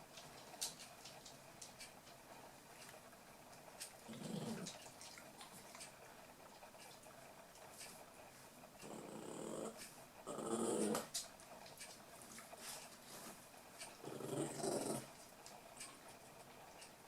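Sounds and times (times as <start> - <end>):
puppies growling: 4.0 - 5.8, 8.8 - 11.3, 13.9 - 15.2.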